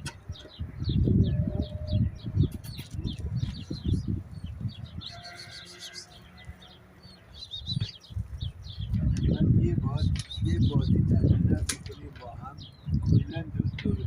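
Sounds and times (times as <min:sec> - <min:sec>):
small birds chirping: 0:00.0 - 0:14.0
low rumbling thumps: 0:07.7 - 0:14.0.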